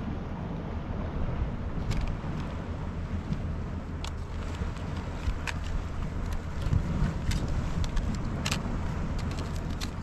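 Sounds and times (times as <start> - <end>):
wind buffeting microphone: 0.0 - 10.0.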